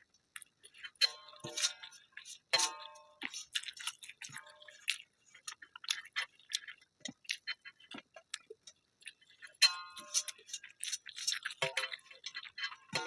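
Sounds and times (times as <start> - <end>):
chewing and handling food: 0.0 - 13.0.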